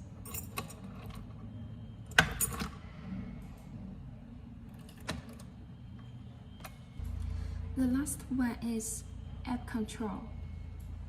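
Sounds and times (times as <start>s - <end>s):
key jingle: 0.2s - 1.3s, 2.1s - 2.8s.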